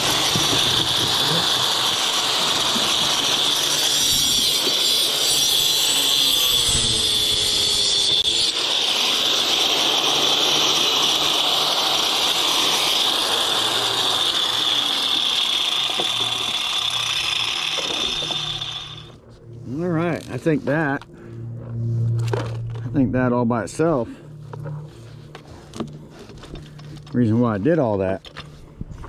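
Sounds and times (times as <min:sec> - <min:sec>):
power tool whining: 0:00.0 - 0:19.2.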